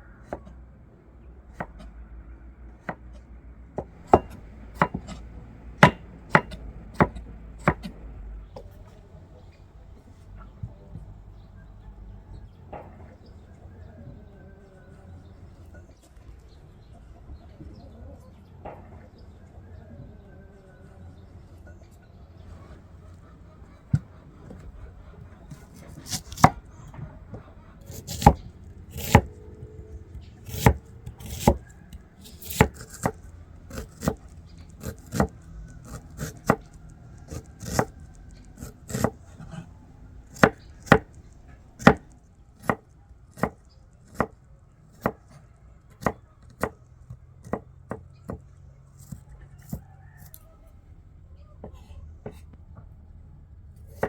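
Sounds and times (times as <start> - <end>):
knife chopping on cutting board: 3.8 - 8.0, 25.5 - 26.7, 27.3 - 39.7, 40.3 - 41.1, 41.8 - 42.8, 43.4 - 44.4, 45.0 - 45.2, 46.0 - 46.8, 47.4 - 48.4.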